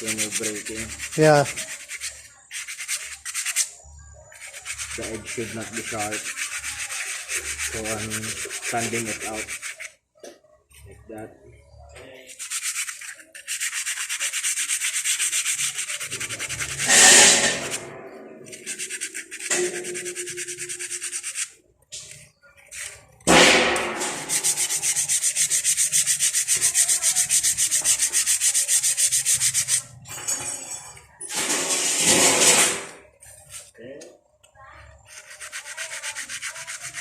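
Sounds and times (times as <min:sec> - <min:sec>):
sanding scraping strokes: 0:00.0 - 0:10.0, 0:12.2 - 0:33.7, 0:34.9 - 0:37.0
sharp scrape or knock: 0:04.3 - 0:09.9, 0:12.3 - 0:33.7.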